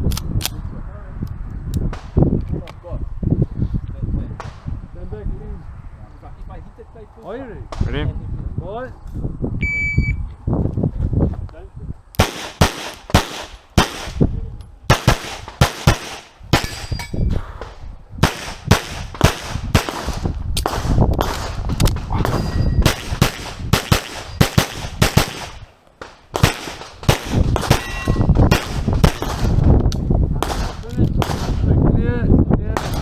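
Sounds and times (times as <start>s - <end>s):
handgun shots: 12.2s - 14.3s, 14.9s - 17.6s, 18.2s - 31.7s, 32.8s - 33.0s
steel targets clanging: 15.5s - 17.5s, 22.2s - 24.7s, 26.4s - 29.6s.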